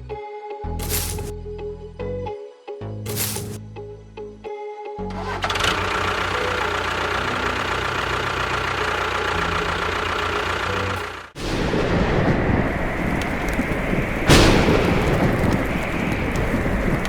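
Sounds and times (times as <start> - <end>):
engine running: 5.1 - 11.4.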